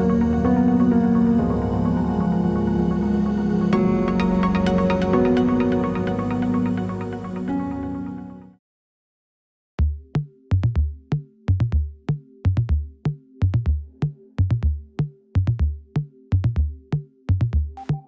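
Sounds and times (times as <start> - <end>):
held synth chord: 0.0 - 8.5
drum machine beat: 9.8 - 18.0.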